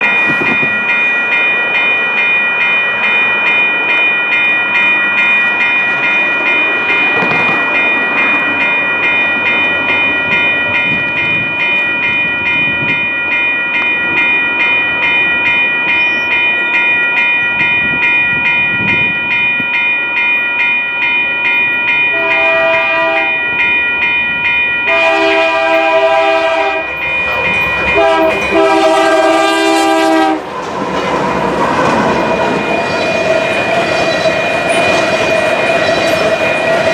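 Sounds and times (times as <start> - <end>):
train rumble: 0.0 - 19.8, 21.2 - 36.9
wheels clicking over rail joints: 5.8 - 11.8, 30.4 - 36.9
locomotive air horn: 22.1 - 23.4, 24.9 - 27.0, 27.9 - 30.5.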